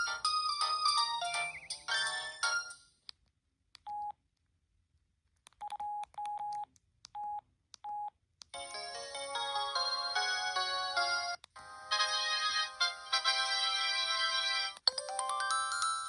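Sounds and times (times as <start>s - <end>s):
polyphonic ringtone: 0.0s - 2.8s, 11.8s - 16.0s.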